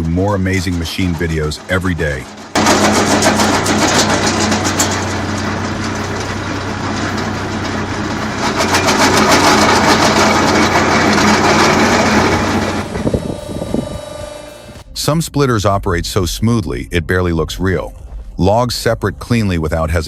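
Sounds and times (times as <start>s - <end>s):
rapid mechanical clatter: 0.0s - 14.8s
heavy machinery engine hum: 0.0s - 15.2s.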